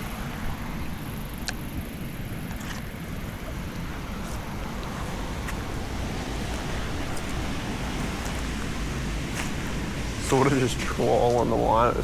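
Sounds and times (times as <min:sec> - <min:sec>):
wind buffeting microphone: 0:00.0 - 0:12.0
rain hissing: 0:03.2 - 0:12.0.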